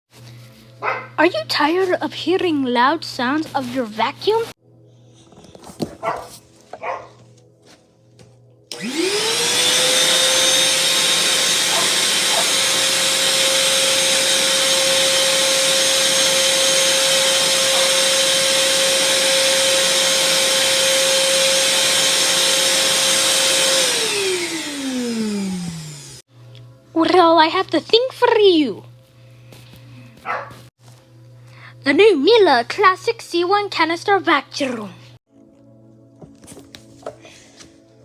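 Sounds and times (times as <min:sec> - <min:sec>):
vacuum cleaner motor running: 0:08.7 - 0:26.3.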